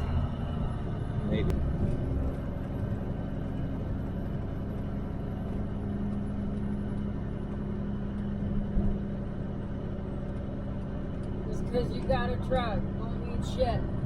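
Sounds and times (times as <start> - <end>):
truck engine and road rumble: 0.0 - 14.0.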